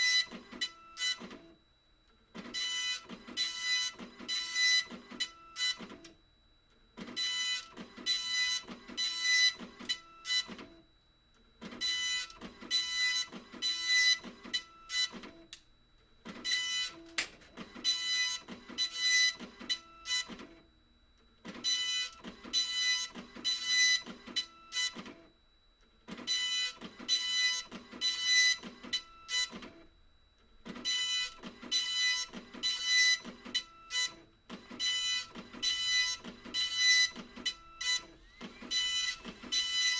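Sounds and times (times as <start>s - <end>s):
dot-matrix printer head buzzing: 16.2s - 20.6s, 26.0s - 29.9s, 30.6s - 39.9s.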